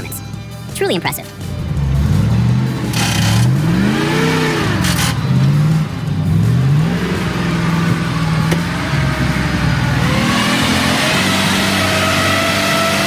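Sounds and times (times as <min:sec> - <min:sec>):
truck engine revving: 0:00.0 - 0:13.0.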